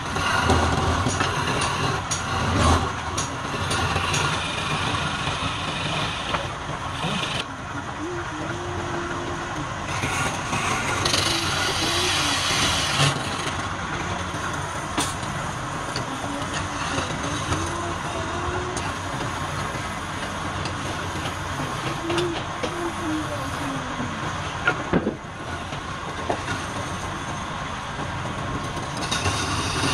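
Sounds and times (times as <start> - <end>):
wood lathe humming: 0.0 - 24.7, 25.5 - 29.9
tool hissing cutting wood: 9.9 - 13.5.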